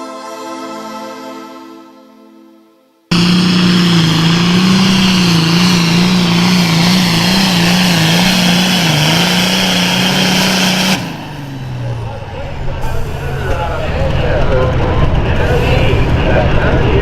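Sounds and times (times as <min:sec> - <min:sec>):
music: 0:00.0 - 0:03.1
tractor diesel engine at full throttle: 0:03.1 - 0:17.0.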